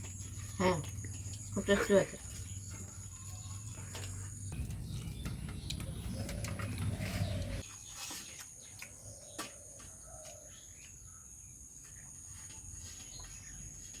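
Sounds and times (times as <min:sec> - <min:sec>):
birds calling: 0:00.0 - 0:08.0
low rumble: 0:04.4 - 0:07.6.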